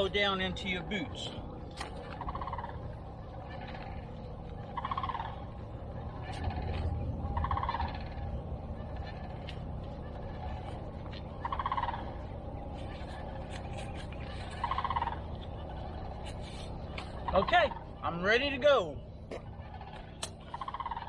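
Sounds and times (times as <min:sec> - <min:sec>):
low background hum: 0:00.0 - 0:21.0
bird rattling call: 0:02.0 - 0:05.5, 0:19.5 - 0:21.0.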